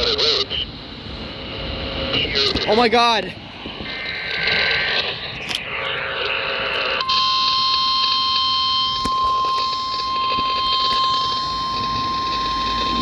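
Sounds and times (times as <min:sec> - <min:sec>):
steady high-pitched alarm tone: 0:03.7 - 0:13.0.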